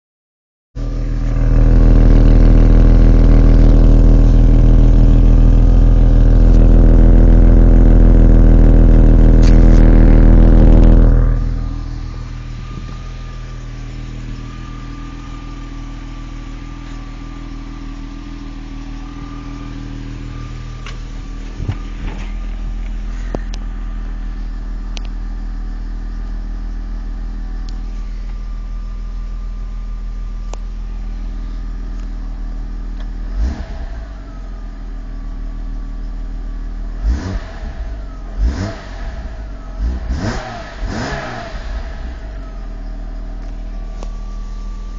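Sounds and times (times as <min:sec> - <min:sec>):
car engine running: 0:00.8 - 0:44.9.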